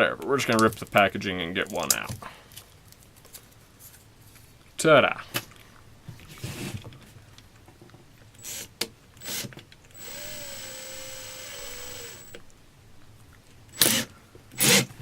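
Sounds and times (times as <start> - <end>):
electric drill motor whine: 9.2 - 12.4.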